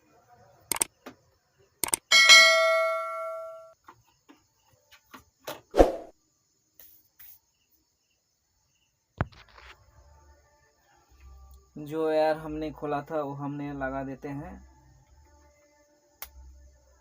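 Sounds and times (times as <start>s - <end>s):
struck metal ringing: 2.1s - 3.7s.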